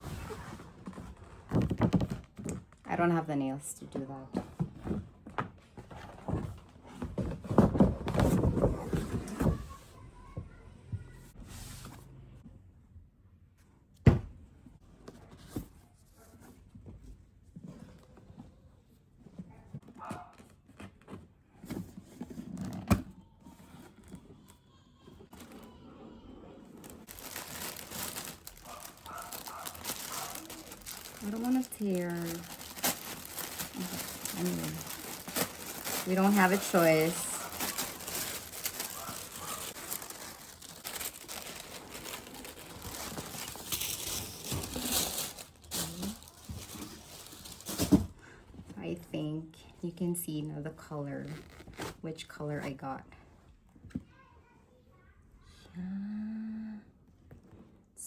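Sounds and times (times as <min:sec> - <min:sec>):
packaging taps and rustles: 0:26.8 - 0:48.1.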